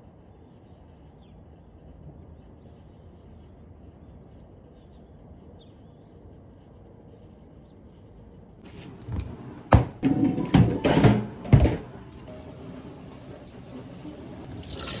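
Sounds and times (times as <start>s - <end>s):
objects clattering and knocking: 8.6s - 13.7s.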